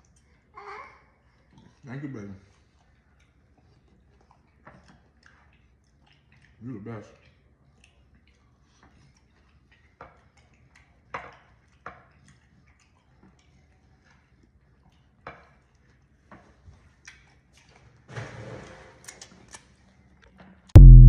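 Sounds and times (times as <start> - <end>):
eating clicks and smacks: 3.0 - 16.4, 17.0 - 17.8.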